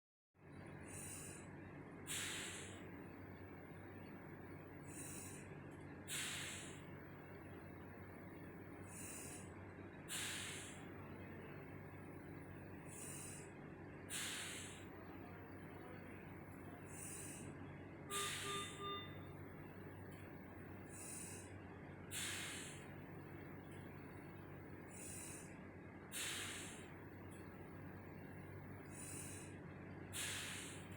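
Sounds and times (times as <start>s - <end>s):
low machine hum: 0.4s - 30.9s
ventilator air rush and hiss: 0.8s - 17.5s, 19.5s - 30.9s
quick beeps: 18.1s - 19.5s.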